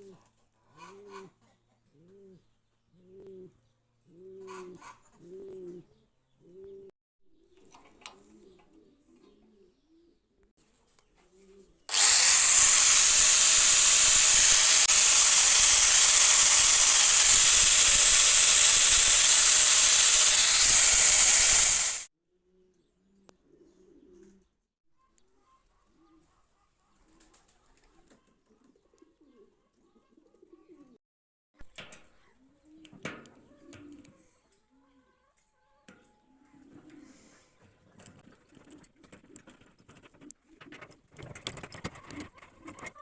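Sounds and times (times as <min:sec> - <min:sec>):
faint bird cooing: 0:00.0 - 0:06.9, 0:08.1 - 0:10.4, 0:22.4 - 0:24.5, 0:28.4 - 0:31.0
loud steady hiss: 0:11.9 - 0:22.1.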